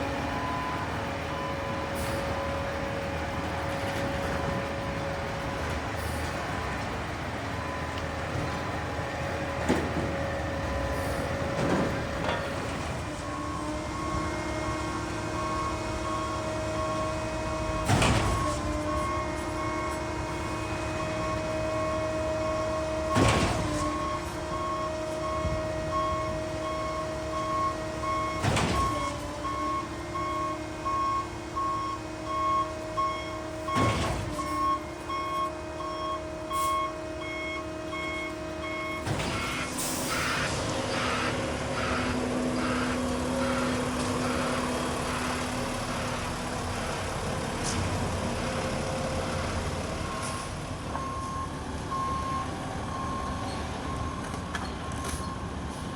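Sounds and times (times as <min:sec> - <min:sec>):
reversing alarm beeping: 0:00.0 - 0:02.9, 0:13.1 - 0:46.1, 0:49.2 - 0:55.6
truck engine pulsing: 0:00.0 - 0:55.7
diesel engine running: 0:00.0 - 0:55.9.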